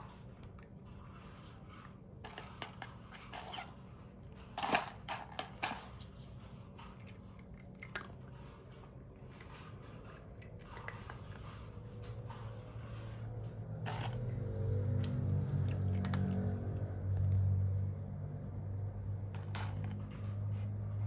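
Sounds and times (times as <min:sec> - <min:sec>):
cats crunching: 0:00.0 - 0:17.8, 0:19.2 - 0:21.0
kibble and plastic clicking: 0:06.8 - 0:12.8, 0:13.8 - 0:17.5, 0:19.4 - 0:20.5.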